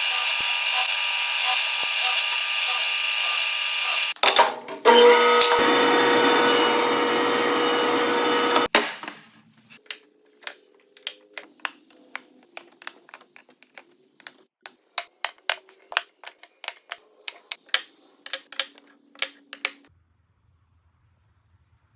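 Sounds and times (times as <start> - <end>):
power tool running: 0.0 - 4.2, 4.8 - 8.7.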